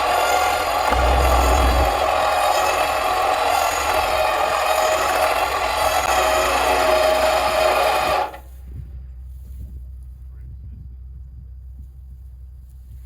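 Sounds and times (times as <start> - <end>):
winch pulling cable: 0.0 - 8.4.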